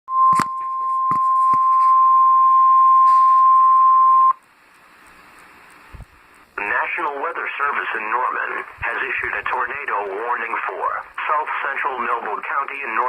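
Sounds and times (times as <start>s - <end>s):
steady single-pitch alert tone: 0.1s - 4.4s
faint radio hiss: 4.2s - 13.0s.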